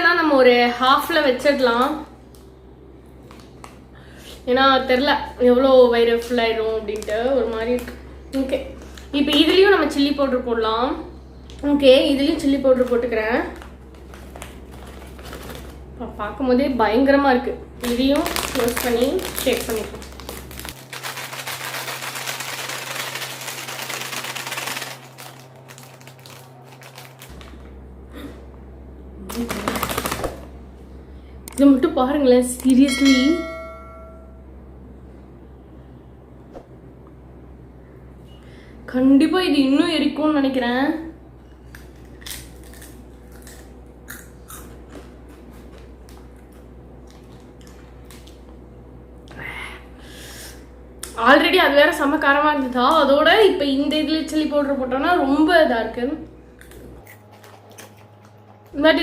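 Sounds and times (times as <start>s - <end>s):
plastic chip packet crinkling: 13.5s - 15.9s, 17.8s - 27.6s, 29.3s - 30.4s.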